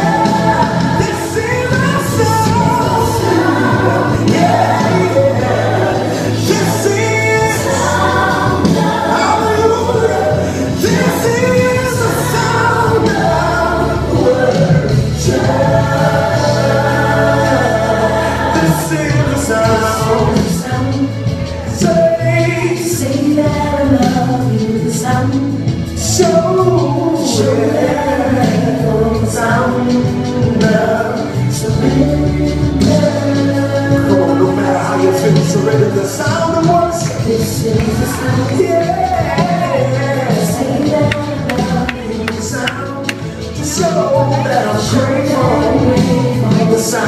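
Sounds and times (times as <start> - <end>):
choir singing long notes: 0.0 - 21.1
band accompaniment: 0.0 - 47.0.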